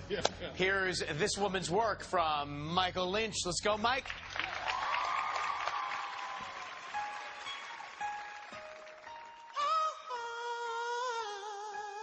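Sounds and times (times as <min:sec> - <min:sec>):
audience applauding and cheering: 0:04.0 - 0:10.3
long high cheer: 0:04.4 - 0:08.7.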